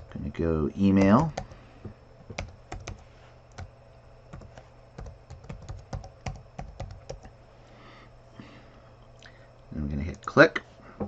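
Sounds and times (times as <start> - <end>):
computer keyboard typing: 1.0 - 1.6, 2.3 - 3.7, 4.3 - 7.3.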